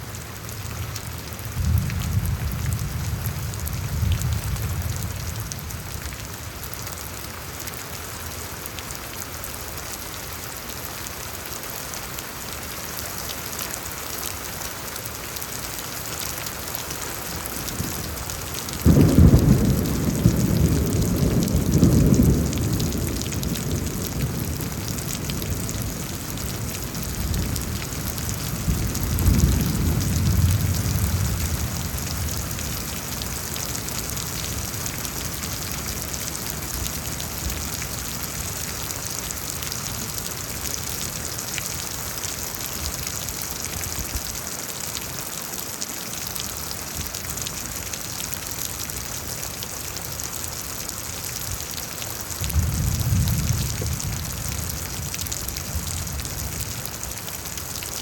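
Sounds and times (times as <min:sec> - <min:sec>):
rain hissing: 0:14.6 - 0:45.0
thunder rumbling: 0:17.6 - 0:38.6, 0:52.4 - 0:57.0.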